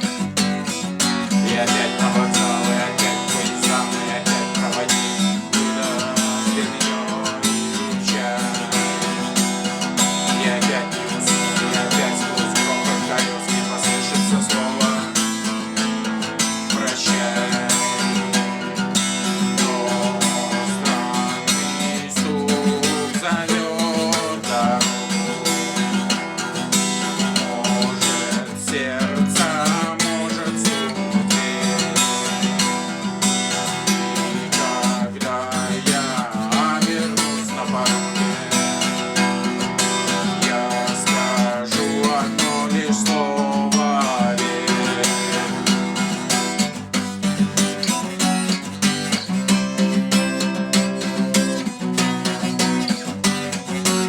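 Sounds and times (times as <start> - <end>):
acoustic guitar strumming: 0.0 - 54.0.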